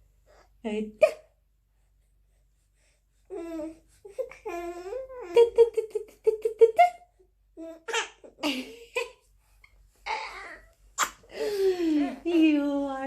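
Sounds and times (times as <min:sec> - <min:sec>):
baby cooing: 0:10.1 - 0:11.2.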